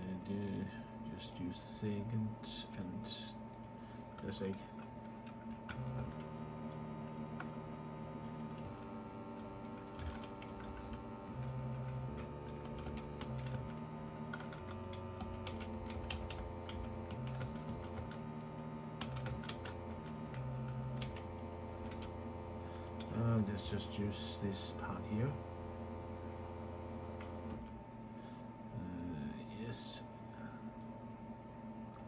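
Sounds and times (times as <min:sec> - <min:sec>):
keyboard typing clicks: 0:03.6 - 0:07.6, 0:08.2 - 0:22.1
low synthesizer bass tone: 0:05.5 - 0:27.7.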